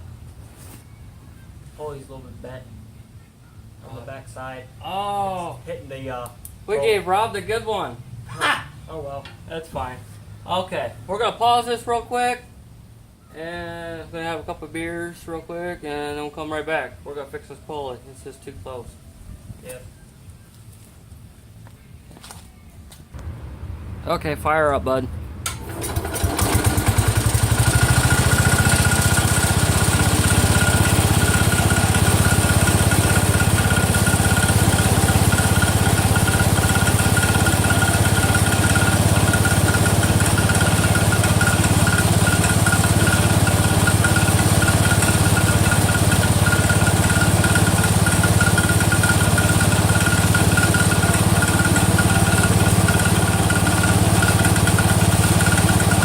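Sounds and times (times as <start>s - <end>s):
garden tractor engine running: 25.4s - 56.0s.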